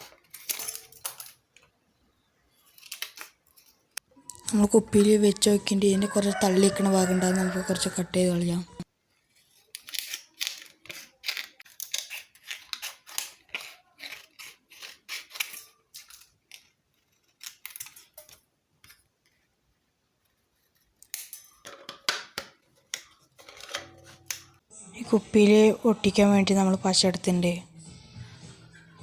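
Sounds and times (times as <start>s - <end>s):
scissors snipping plastic: 9.7s - 19.1s.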